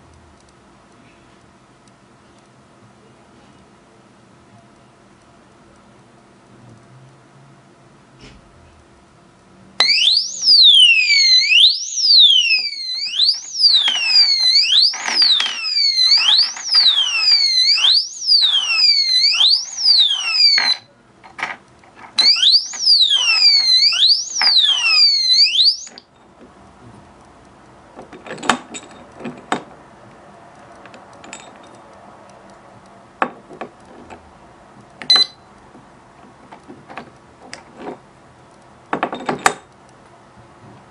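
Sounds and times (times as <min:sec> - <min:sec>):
shrill electronic siren wail: 0:09.8 - 0:20.8, 0:22.2 - 0:26.0
sharp clicks and knocks: 0:12.5 - 0:24.8, 0:25.8 - 0:29.8, 0:30.6 - 0:40.0.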